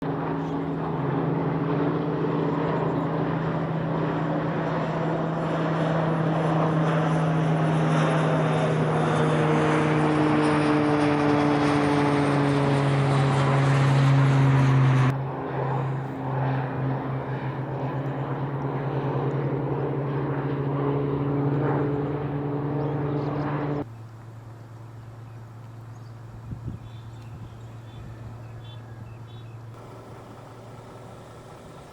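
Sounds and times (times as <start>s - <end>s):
propeller aircraft droning: 0.0s - 26.4s, 27.1s - 31.9s
steady low hum: 29.7s - 31.9s.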